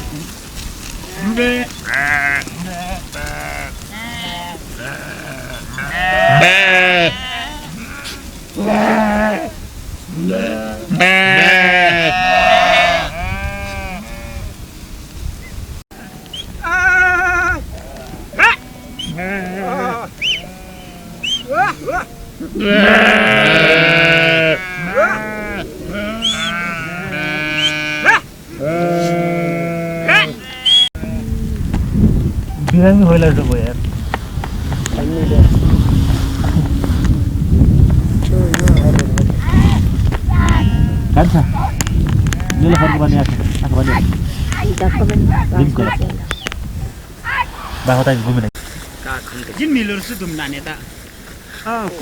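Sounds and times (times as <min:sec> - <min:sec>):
sheep bleating: 0:01.1 - 0:09.5, 0:10.2 - 0:14.5, 0:16.0 - 0:31.2, 0:39.4 - 0:43.0.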